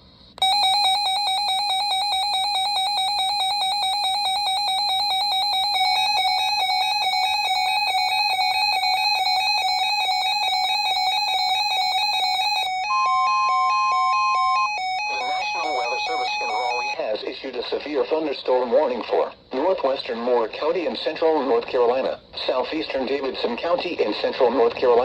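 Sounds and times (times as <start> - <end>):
alarm beeping rapidly: 0.4 - 17.0
alternating beep pattern: 0.4 - 17.0.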